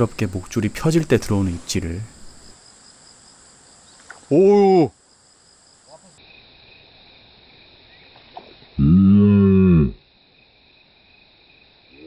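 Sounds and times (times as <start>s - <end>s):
crickets chirring: 0.0s - 12.0s
man's low ooh exclamation: 8.8s - 10.0s.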